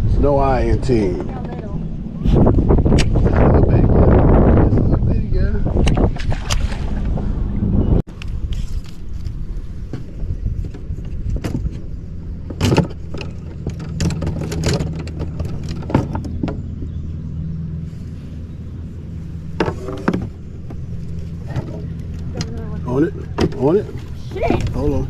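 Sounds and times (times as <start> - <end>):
sharp clicks and knocks: 12.4 - 16.7.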